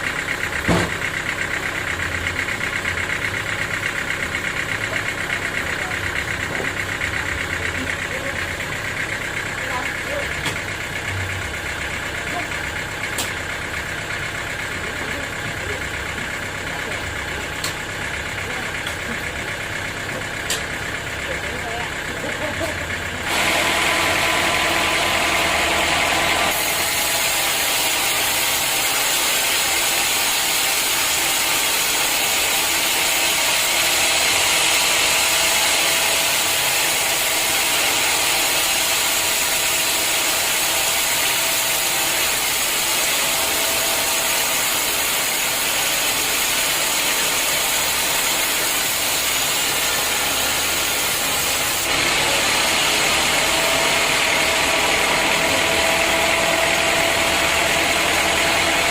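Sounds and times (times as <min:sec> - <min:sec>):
saw blade hissing through log: 0:26.2 - 0:58.9.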